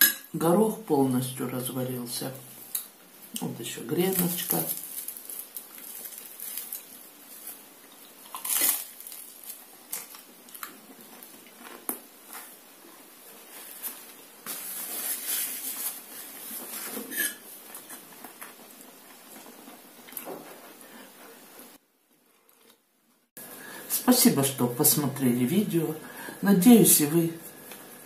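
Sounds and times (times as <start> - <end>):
crunchy chewing: 4.6 - 12.5.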